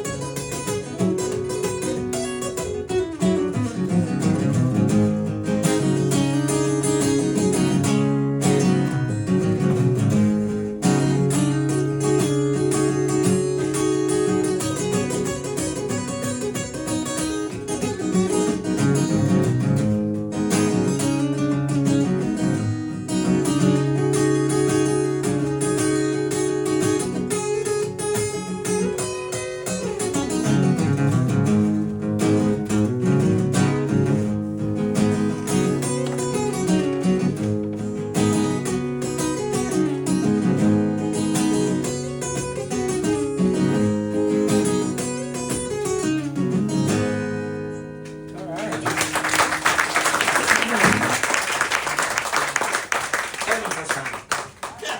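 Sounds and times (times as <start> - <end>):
acoustic guitar strumming chords: 0.0 - 48.8.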